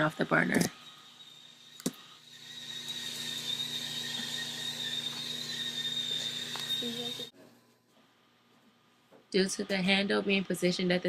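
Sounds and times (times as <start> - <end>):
tea kettle whistling: 0.0 - 7.4.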